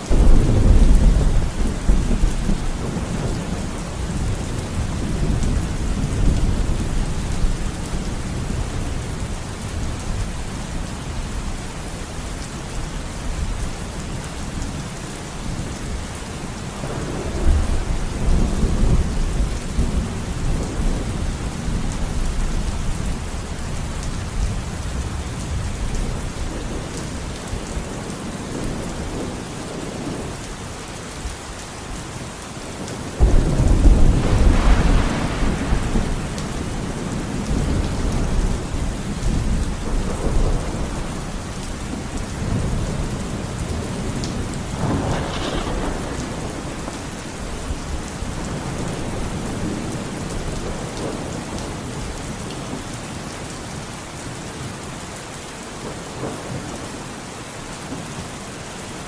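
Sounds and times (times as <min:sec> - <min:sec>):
thunder rumbling: 0:00.0 - 0:11.2, 0:16.8 - 0:30.3, 0:33.2 - 0:52.1
steady rain: 0:00.0 - 0:59.0.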